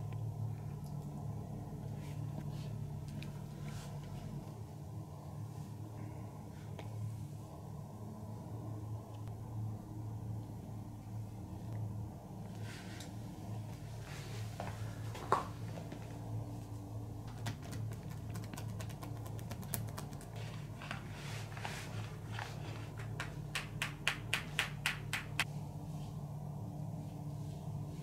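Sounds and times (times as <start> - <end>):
steady low hum: 0.0 - 28.0
hands tapping during massage: 17.3 - 20.3, 23.0 - 25.4.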